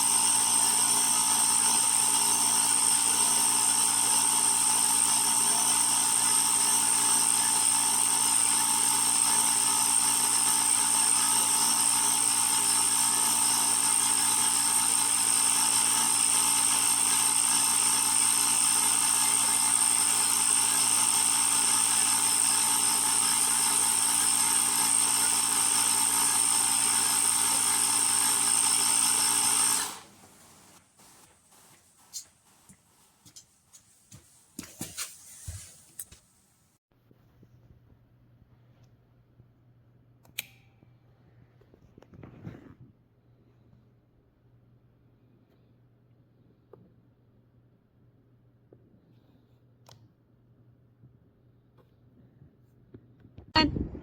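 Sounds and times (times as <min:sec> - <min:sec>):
air compressor whining: 0:00.0 - 0:33.8.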